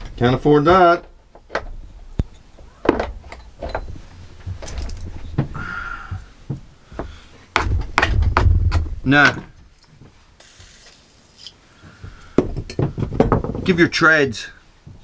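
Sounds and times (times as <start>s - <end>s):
knocks and clunks of tools: 0.0s - 5.6s, 6.5s - 9.5s, 12.0s - 13.8s.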